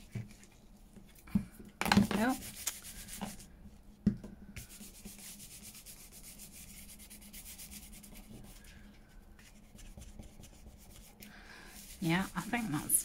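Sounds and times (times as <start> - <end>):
hand rubbing over paper: 4.6 - 13.0.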